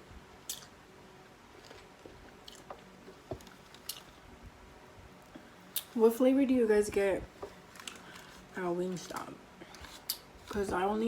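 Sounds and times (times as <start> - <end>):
person chewing: 0.5 - 0.7, 1.6 - 2.8, 3.4 - 4.2, 9.8 - 10.6.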